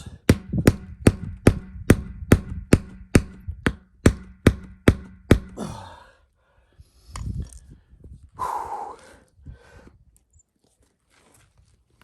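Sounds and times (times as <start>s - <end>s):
sharp knocks: 0.3s - 5.7s.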